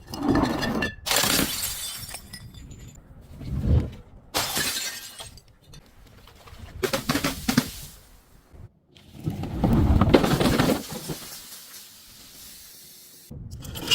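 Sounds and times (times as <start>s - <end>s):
glass bottles shattering: 0.4s - 3.0s, 4.4s - 5.5s.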